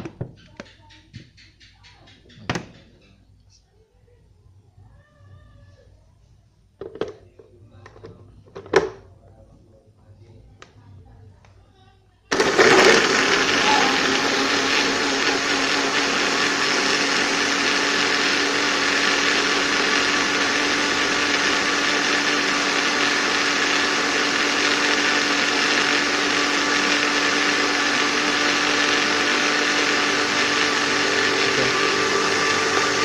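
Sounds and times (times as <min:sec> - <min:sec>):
electric blender running: 0:12.3 - 0:33.0.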